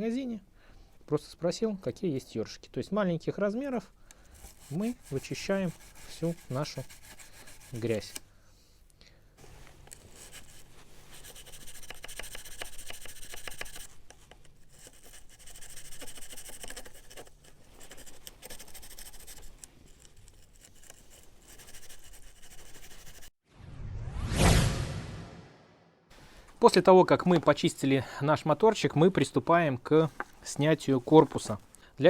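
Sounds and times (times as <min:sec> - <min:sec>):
brush scrubbing fan vanes: 0:04.3 - 0:08.2.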